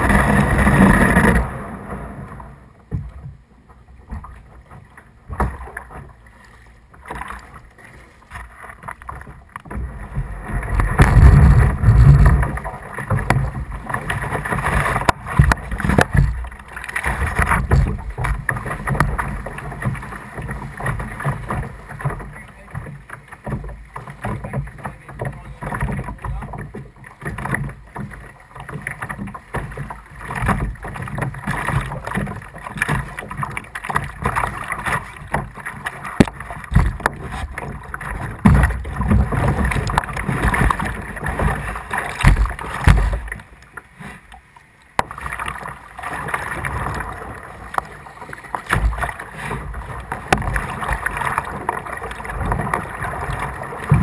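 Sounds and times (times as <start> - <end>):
paddle splashing in water: 0.0 - 54.0
water sloshing against hull: 0.0 - 54.0
low thumps: 36.2 - 43.4.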